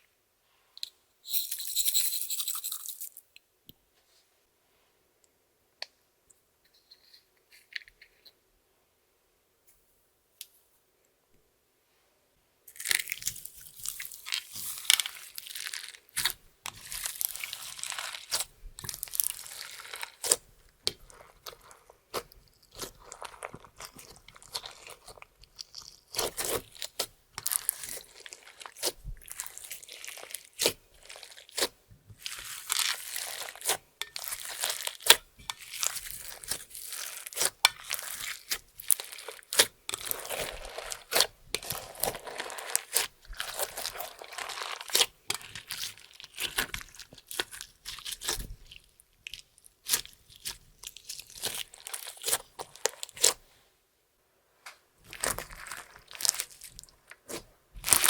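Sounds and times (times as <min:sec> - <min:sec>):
slime crunching and clicking: 0:12.8 - 0:53.4.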